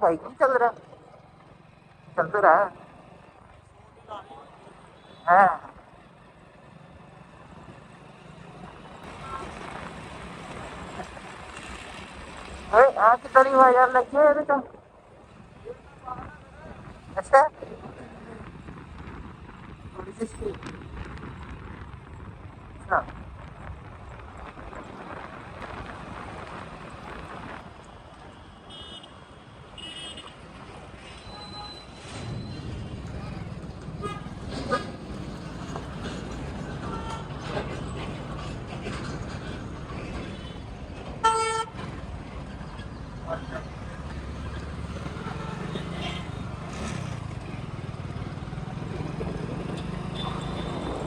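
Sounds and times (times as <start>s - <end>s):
motorcycle engine and road noise: 0.0s - 51.0s
wind buffeting microphone: 16.2s - 28.3s.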